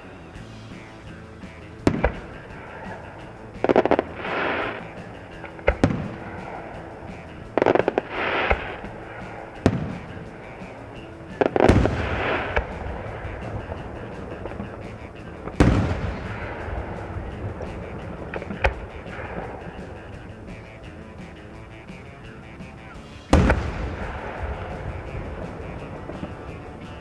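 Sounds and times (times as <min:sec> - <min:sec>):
firework crackling: 0:00.0 - 0:27.0
firework shells bursting: 0:00.5 - 0:27.0.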